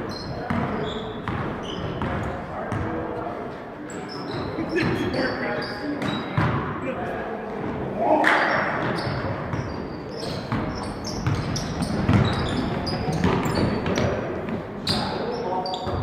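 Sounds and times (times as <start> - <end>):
shoe squeaks: 0.0 - 2.0, 3.9 - 6.4, 8.5 - 14.0, 14.8 - 16.0
voices echoing: 0.0 - 16.0
basketballs bouncing on wooden floor: 0.3 - 3.0, 6.0 - 6.6, 10.4 - 15.1.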